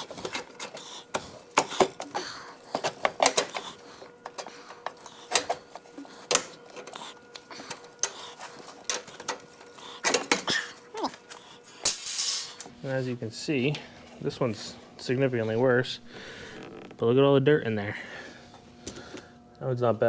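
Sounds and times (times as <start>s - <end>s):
faint steady hum: 0.0s - 20.0s
tools and metal parts clinking: 11.8s - 12.7s.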